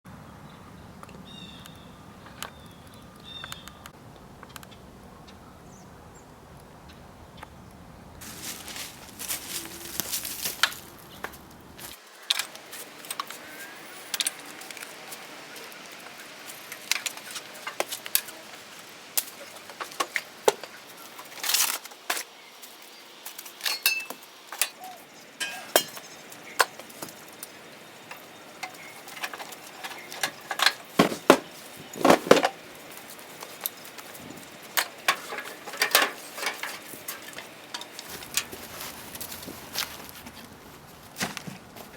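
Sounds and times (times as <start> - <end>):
hard objects knocking and clinking: 25.4 - 27.2, 28.7 - 32.6.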